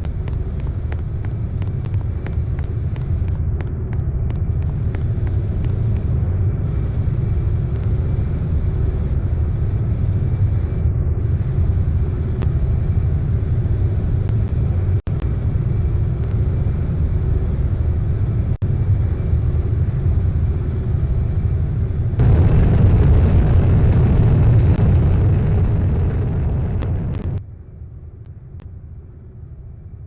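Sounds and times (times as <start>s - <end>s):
low rumble: 22.2s - 27.4s.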